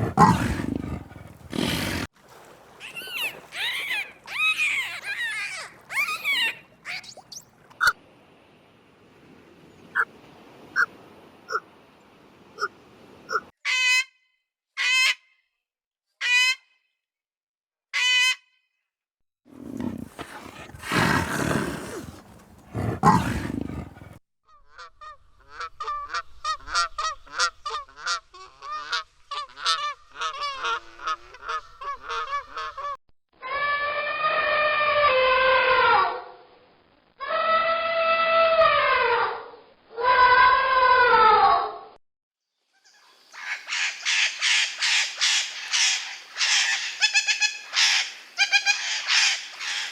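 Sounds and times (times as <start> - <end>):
farm animal honking calls: 0.0 - 2.1, 19.6 - 24.2
loud rough animal noise: 0.0 - 2.1, 19.5 - 24.2
rapid chattering animal calls: 0.0 - 2.1, 19.5 - 24.2
long falling animal calls: 19.6 - 24.2.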